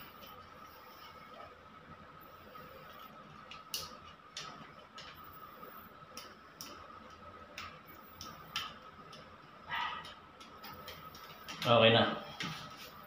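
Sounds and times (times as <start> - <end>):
faint steady hum: 0.0 - 13.0
wall switch clicks and ticks: 3.5 - 5.2, 6.1 - 9.3.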